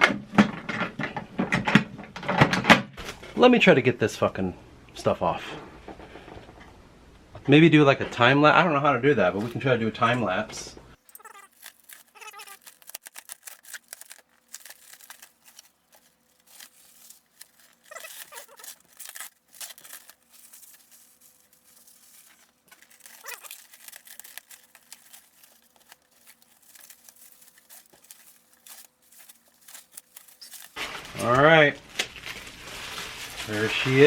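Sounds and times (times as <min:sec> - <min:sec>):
packing material tearing and crinkling: 0:11.0 - 0:34.0.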